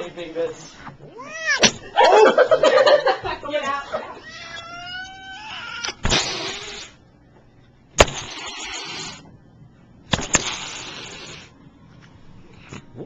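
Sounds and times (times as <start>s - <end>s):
cat hissing and spitting: 5.8s - 7.0s, 8.0s - 9.3s, 10.1s - 11.6s.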